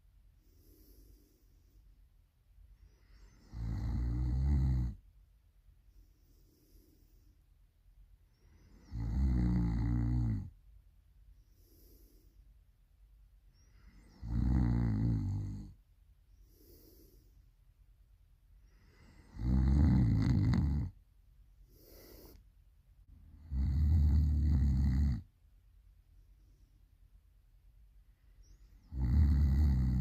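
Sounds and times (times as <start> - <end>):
person snoring loudly: 8.8 - 10.5, 14.1 - 15.7, 19.2 - 20.9, 23.4 - 25.2, 28.9 - 30.0.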